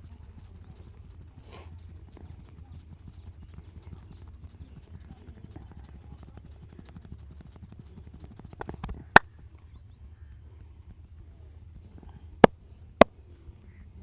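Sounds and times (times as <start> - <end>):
sharp cracks from massage: 8.1 - 9.3.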